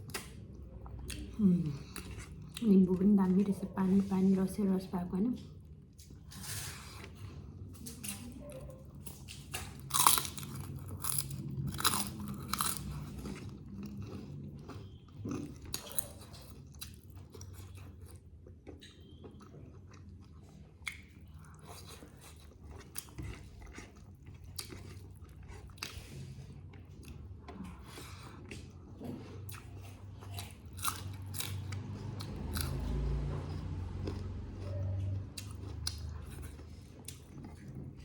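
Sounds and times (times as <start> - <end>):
person chewing food: 0.0 - 4.1, 5.4 - 38.0
loud crunchy bites: 9.8 - 13.4.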